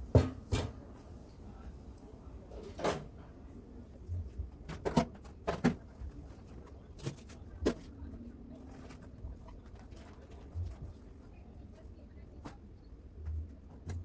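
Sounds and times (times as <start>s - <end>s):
knocks and clatters in a fridge: 0.0s - 0.9s, 2.6s - 3.2s, 4.2s - 6.4s.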